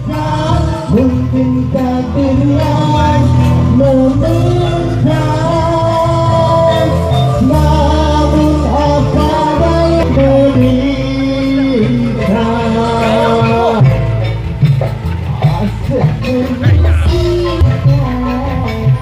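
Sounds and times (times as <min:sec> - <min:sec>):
loud music with singing: 0:00.0 - 0:19.0
heavy beat: 0:14.7 - 0:18.4.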